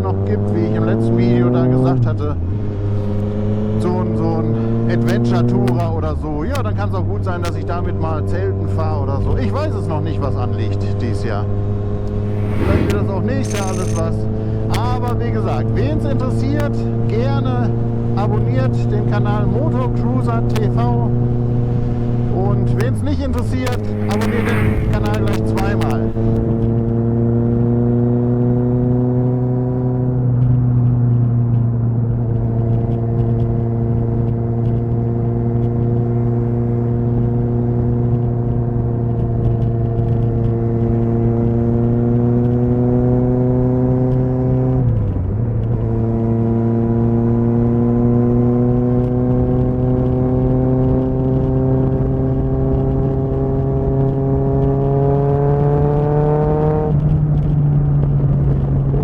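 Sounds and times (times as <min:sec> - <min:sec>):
gear change: 0:11.5 - 0:17.1, 0:22.3 - 0:26.7.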